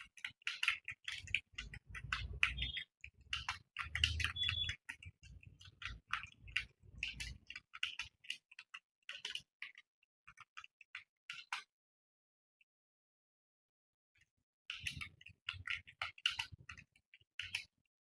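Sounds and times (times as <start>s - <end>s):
computer keyboard typing: 0.0s - 9.4s.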